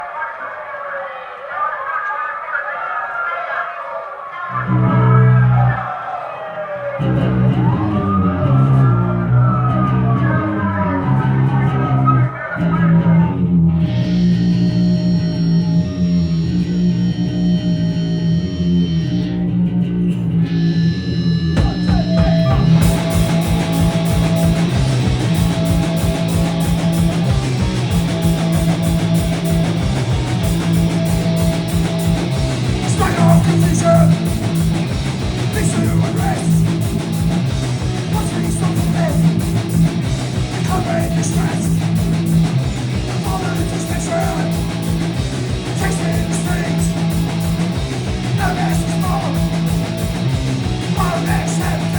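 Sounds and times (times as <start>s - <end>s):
bass guitar: 4.6s - 5.9s, 7.0s - 51.9s
distorted electric guitar: 4.6s - 51.9s
drums: 21.5s - 51.9s.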